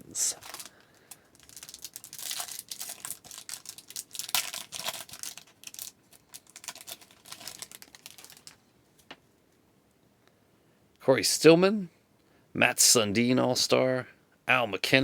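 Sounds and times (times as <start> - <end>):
wrapper tearing and crinkling: 0.0 - 8.6.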